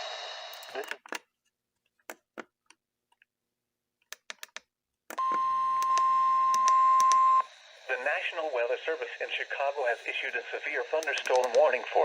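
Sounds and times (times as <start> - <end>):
loud steady alarm tone: 5.2 - 11.0.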